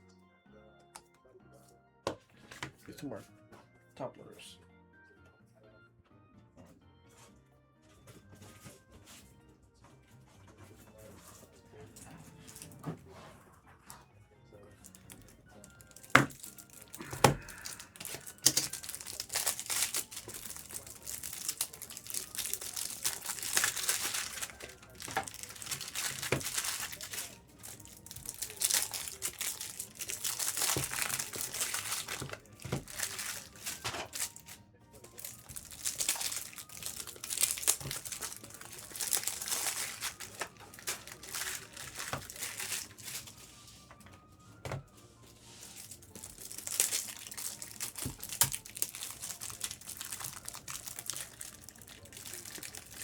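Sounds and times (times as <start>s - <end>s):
foil wrappers crinkling and tearing: 14.6s - 43.7s, 45.5s - 53.0s.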